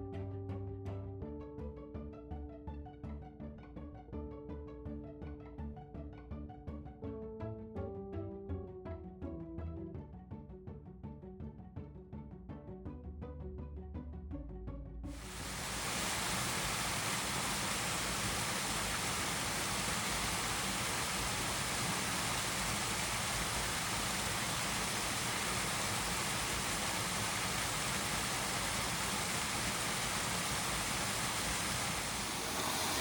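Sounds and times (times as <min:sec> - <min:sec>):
rushing waterfall roar: 0:15.2 - 0:33.0.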